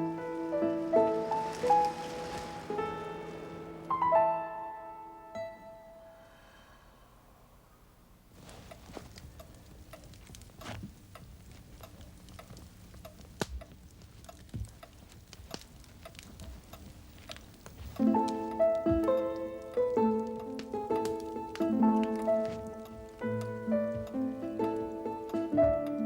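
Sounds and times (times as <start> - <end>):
piano music: 0.0 - 6.4, 18.0 - 26.0.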